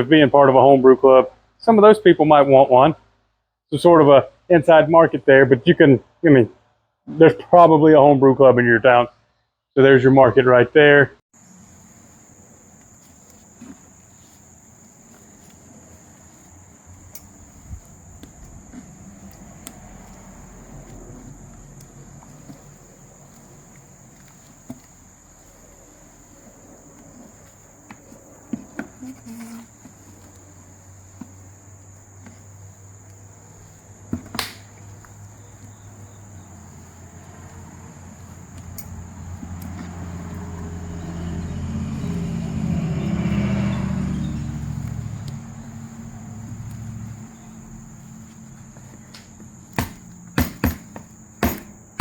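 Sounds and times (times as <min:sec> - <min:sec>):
crickets trilling: 0:11.3 - 0:52.0
sharp knocks: 0:49.7 - 0:52.0.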